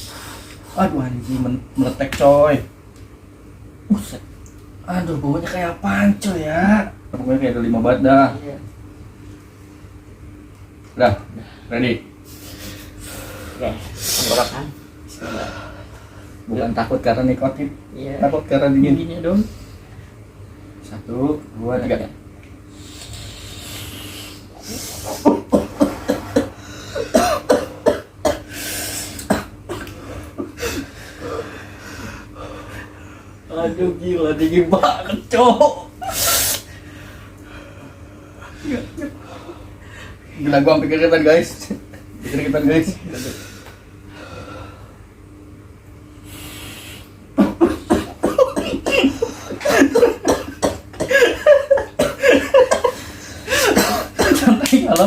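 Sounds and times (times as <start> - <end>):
person coughing hard: 25.1 - 28.5, 29.2 - 29.9, 47.4 - 54.6.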